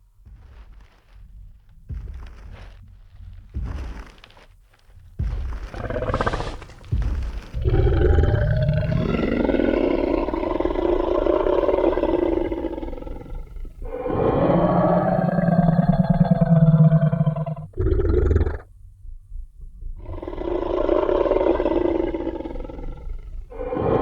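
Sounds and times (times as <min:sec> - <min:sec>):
heavy stomps: 0:00.1 - 0:15.4
long deep dinosaur roar: 0:05.8 - 0:18.6, 0:20.0 - 0:24.0.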